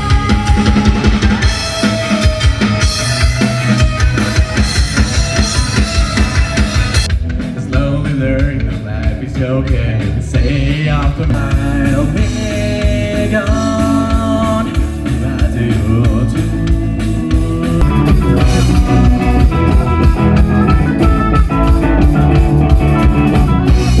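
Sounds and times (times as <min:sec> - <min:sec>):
rock band playing: 0:00.0 - 0:24.0
singer holding long notes: 0:10.4 - 0:22.3.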